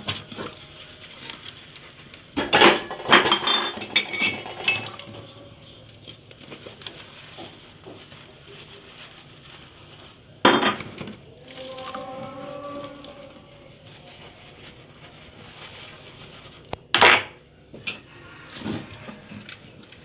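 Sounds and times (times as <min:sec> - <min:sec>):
dishes and cutlery clattering: 0:02.4 - 0:06.7, 0:16.9 - 0:19.6.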